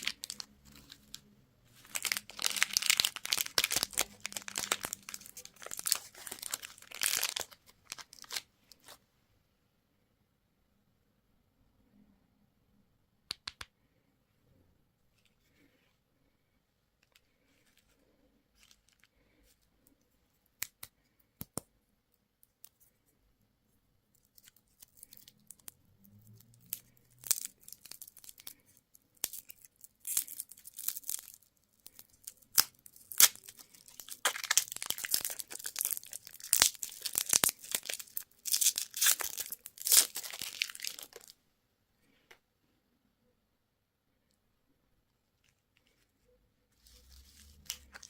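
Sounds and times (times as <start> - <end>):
candy wrapper crinkling: 0.0 - 9.0, 17.0 - 20.9, 24.1 - 41.4, 45.4 - 48.0.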